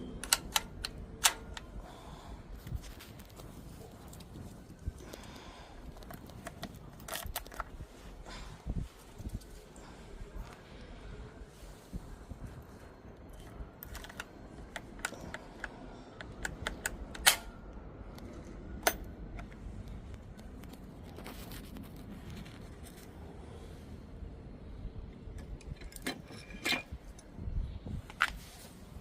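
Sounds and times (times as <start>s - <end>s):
keys and lock parts clinking: 5.8s - 7.8s, 13.2s - 19.6s, 25.3s - 27.4s.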